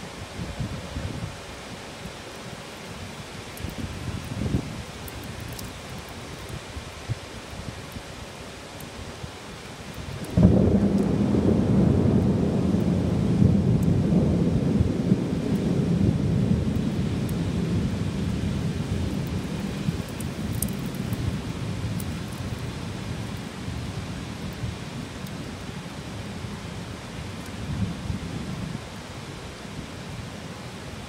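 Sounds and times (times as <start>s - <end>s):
heavy rain: 0.0s - 31.0s
thunder rumbling: 10.1s - 25.0s.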